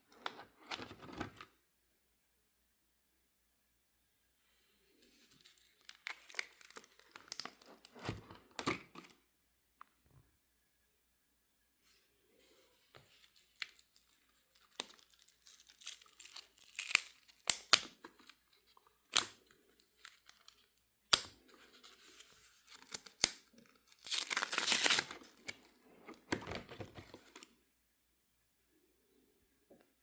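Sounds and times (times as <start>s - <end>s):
plastic binder pages snapping: 19.1s - 19.4s, 24.0s - 27.5s
plastic crinkling rustles: 21.6s - 27.5s.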